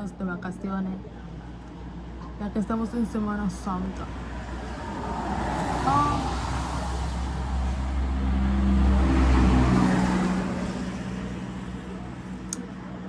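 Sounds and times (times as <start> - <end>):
motor vehicle passing: 3.1 - 13.0.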